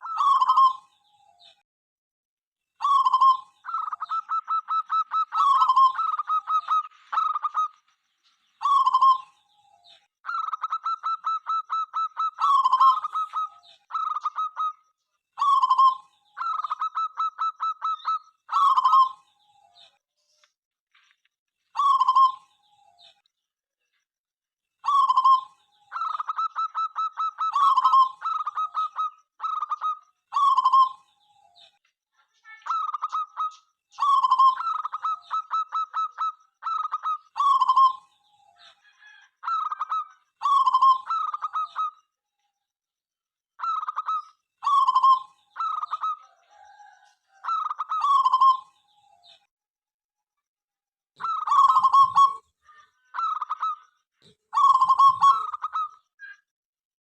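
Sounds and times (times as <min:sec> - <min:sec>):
dove cooing: 0:00.0 - 0:00.9, 0:02.8 - 0:07.8, 0:10.3 - 0:14.8, 0:15.4 - 0:19.2, 0:21.8 - 0:22.5, 0:24.8 - 0:31.1, 0:32.7 - 0:42.0, 0:43.6 - 0:48.8, 0:51.2 - 0:52.4, 0:54.5 - 0:55.9.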